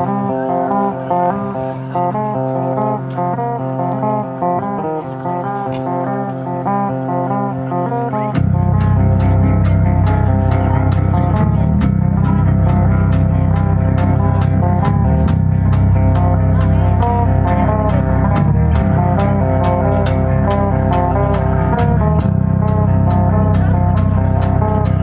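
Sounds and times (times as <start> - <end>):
metal band playing: 0.0 - 25.0.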